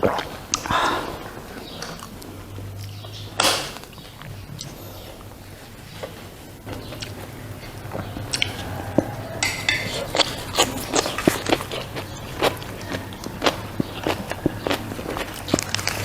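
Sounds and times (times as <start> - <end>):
crunching bites and chews: 9.9 - 16.0.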